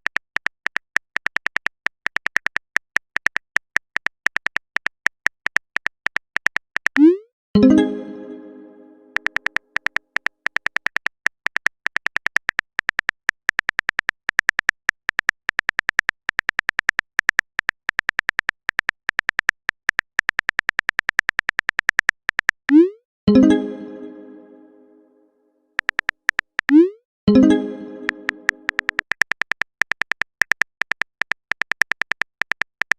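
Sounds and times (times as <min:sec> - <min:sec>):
plucked ringing note: 0:07.6 - 0:09.3, 0:23.3 - 0:25.2, 0:27.3 - 0:28.9.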